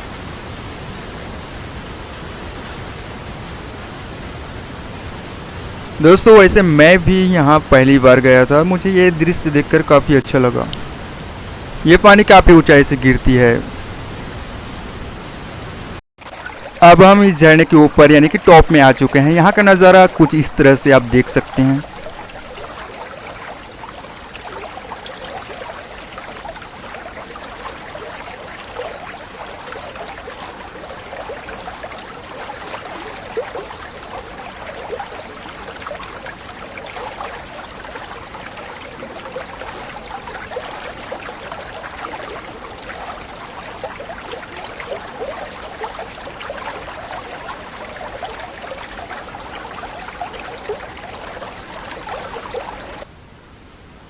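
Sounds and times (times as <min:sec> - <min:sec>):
waterfall rushing over rocks: 0:16.3 - 0:22.9.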